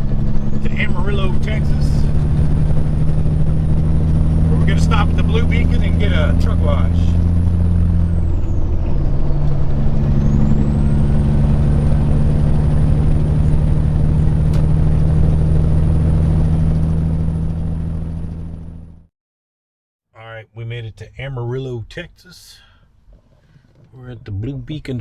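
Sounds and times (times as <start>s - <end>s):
diesel truck engine running: 0.0s - 19.1s.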